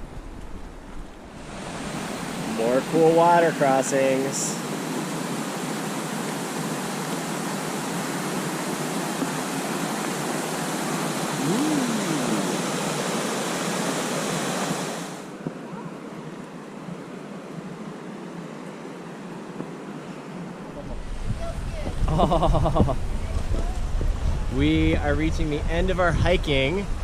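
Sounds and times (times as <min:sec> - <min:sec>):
rushing river water: 0:01.1 - 0:21.3.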